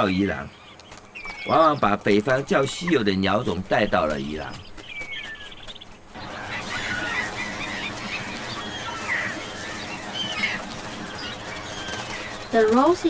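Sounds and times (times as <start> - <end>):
geese honking: 0.0 - 13.0.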